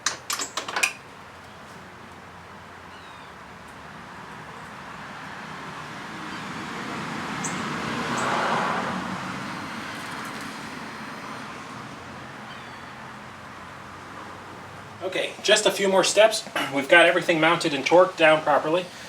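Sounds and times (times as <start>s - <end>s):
vehicle passing by: 3.9s - 16.0s.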